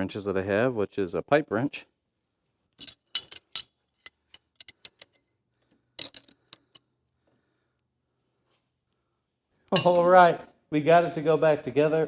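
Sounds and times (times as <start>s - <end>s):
wrench clinking on metal: 2.8s - 5.3s, 6.0s - 6.9s, 9.7s - 10.1s.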